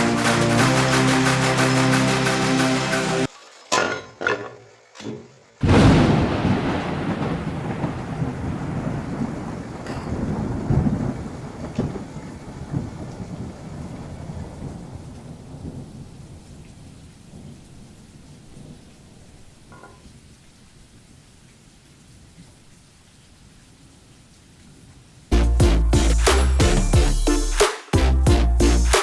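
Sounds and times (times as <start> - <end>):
thunder clap and rumble: 5.6 - 19.3.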